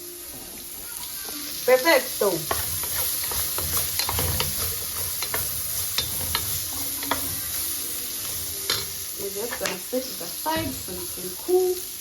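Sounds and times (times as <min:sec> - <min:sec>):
green beans sizzling in a pan: 0:00.0 - 0:12.0
utensil clicking against pan: 0:02.4 - 0:07.3, 0:08.7 - 0:09.8.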